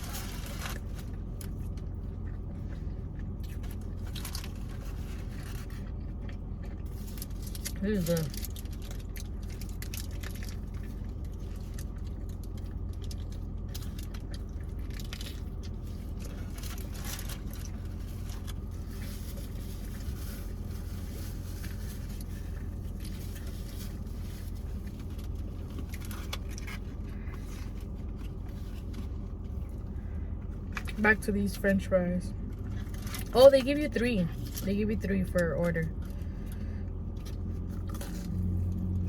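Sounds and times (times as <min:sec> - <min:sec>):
food packaging rustling: 0:00.0 - 0:02.3, 0:03.6 - 0:29.9
car interior hum: 0:00.0 - 0:39.0
chewing: 0:00.1 - 0:31.0.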